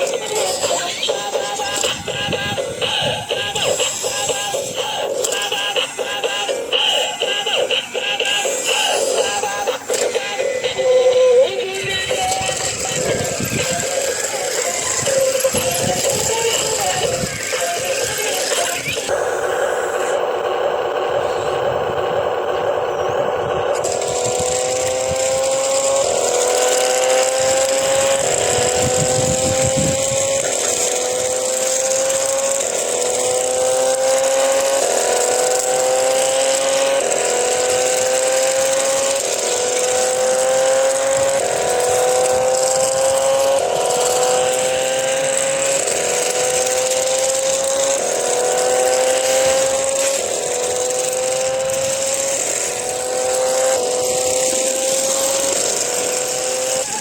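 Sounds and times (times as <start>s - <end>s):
electronic rising siren tone: 17.2s - 57.0s.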